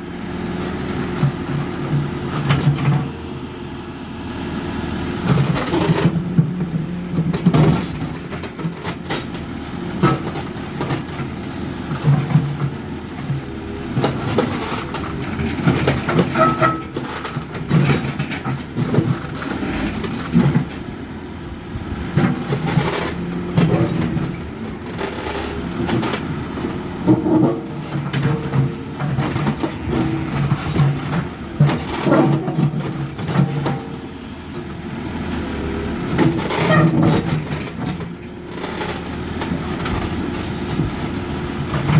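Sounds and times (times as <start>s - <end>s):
diesel engine running under load: 0.0s - 41.9s.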